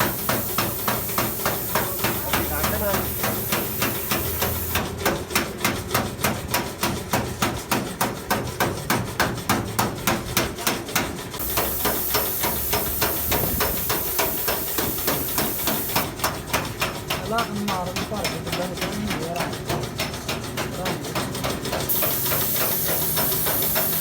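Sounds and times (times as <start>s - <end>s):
high hiss: 0.0s - 4.8s, 11.4s - 16.0s, 21.9s - 24.0s
rapid sharp knocking: 0.0s - 24.0s.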